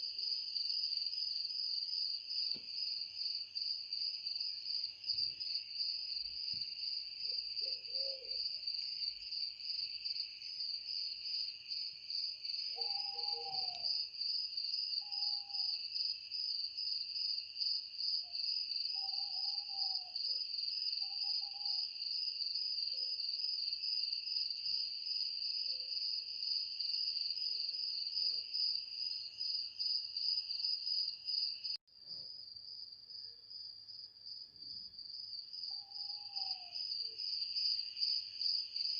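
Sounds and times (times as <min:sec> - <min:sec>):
crickets trilling: 0:12.2 - 0:15.8.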